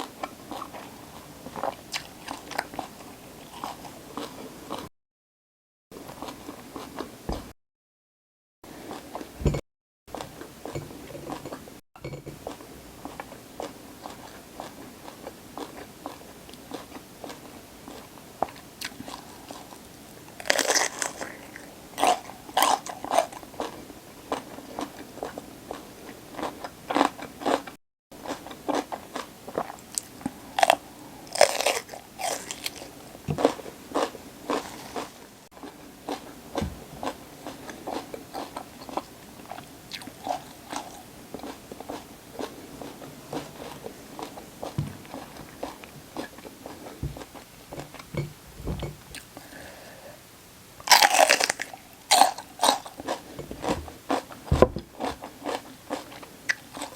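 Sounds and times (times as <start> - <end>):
crunching raw vegetables: 20.4 - 25.4, 26.4 - 48.3, 50.8 - 56.9.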